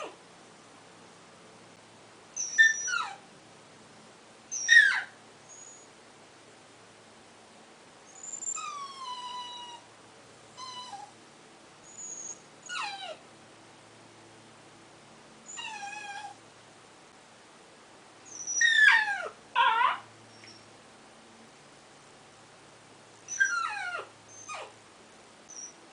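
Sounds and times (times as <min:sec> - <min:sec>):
dog whimpering: 0:02.4 - 0:03.2, 0:04.5 - 0:05.9, 0:08.1 - 0:09.9, 0:10.6 - 0:11.2, 0:11.8 - 0:13.2, 0:15.5 - 0:16.4, 0:18.3 - 0:20.6, 0:23.3 - 0:24.8, 0:25.5 - 0:25.8.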